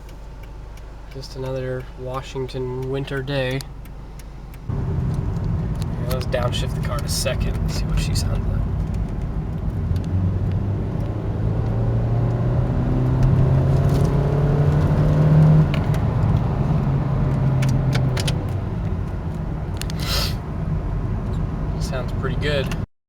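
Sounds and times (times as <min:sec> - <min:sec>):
car engine accelerating: 0:00.0 - 0:22.8.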